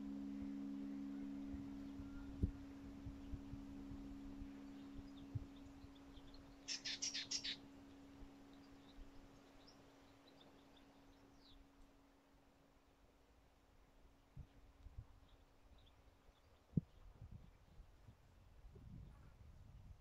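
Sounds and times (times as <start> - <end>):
bird chirping: 0.0 - 12.0
low steady ringing tone: 0.0 - 12.5.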